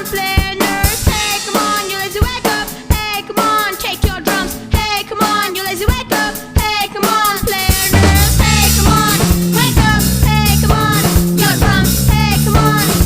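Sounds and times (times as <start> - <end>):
drum kit beat: 0.0 - 13.0
bass line: 7.4 - 13.0.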